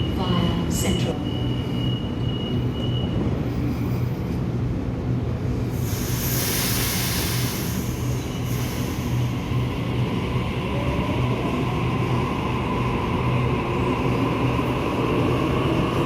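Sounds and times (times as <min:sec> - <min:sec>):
electric train rumbling: 0:00.0 - 0:16.0
loud hiss: 0:05.8 - 0:09.4.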